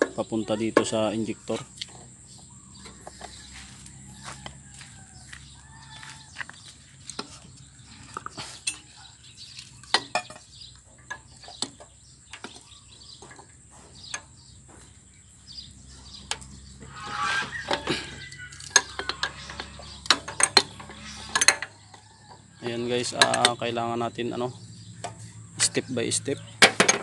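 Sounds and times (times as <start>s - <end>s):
scraping rustle: 2.8s - 10.5s, 15.6s - 22.9s
metal tools clinking on fittings: 8.0s - 12.6s, 17.2s - 22.0s, 22.8s - 24.0s.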